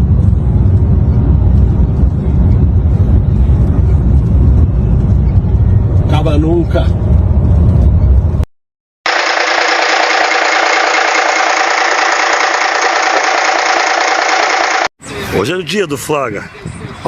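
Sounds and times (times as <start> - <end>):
diesel engine running with clatter: 0.0 - 6.1, 9.1 - 14.9
truck rumbling on the road: 0.0 - 8.5.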